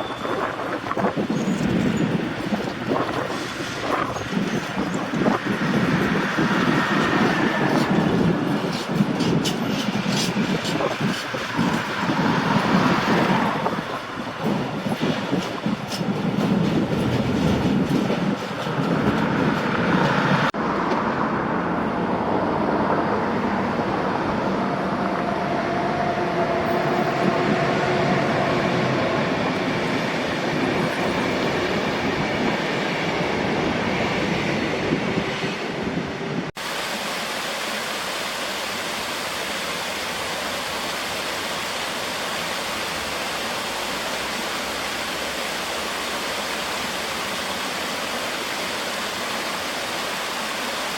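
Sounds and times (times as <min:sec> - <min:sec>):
wheel squeal: 0:00.0 - 0:05.8
train rumble: 0:00.0 - 0:36.6
train wheels clattering over rail joints: 0:00.9 - 0:20.5.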